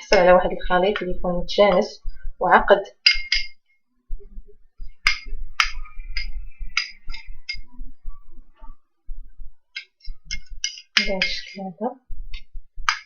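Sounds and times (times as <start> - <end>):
spoon knocks: 3.0 - 3.6
spoon stirring and scraping bowl: 9.7 - 11.7.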